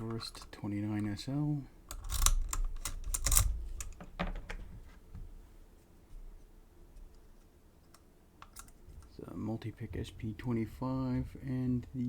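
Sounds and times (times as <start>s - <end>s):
lockpicking tools clicking: 1.9s - 4.0s.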